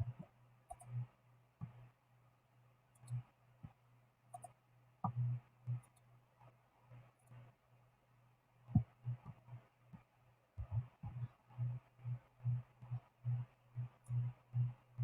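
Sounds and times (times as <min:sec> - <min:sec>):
faint low hum: 0:00.0 - 0:15.0
computer mouse clicking: 0:00.7 - 0:01.0, 0:02.9 - 0:03.2, 0:04.3 - 0:05.2, 0:05.8 - 0:06.1.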